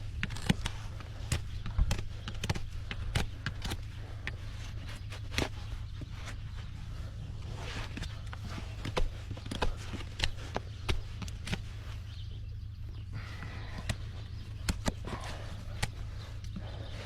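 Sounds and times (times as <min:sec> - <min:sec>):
steady low hum: 0:00.0 - 0:17.0
hoof trimming snaps and clicks: 0:00.1 - 0:05.6, 0:07.8 - 0:11.7, 0:13.5 - 0:16.7.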